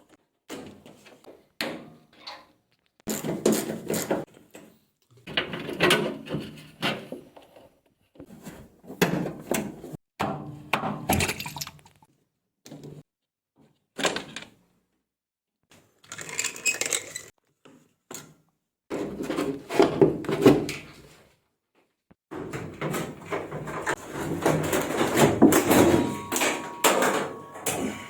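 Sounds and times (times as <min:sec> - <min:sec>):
knocks clatter and scraping: 0:18.9 - 0:21.1, 0:22.3 - 0:28.0.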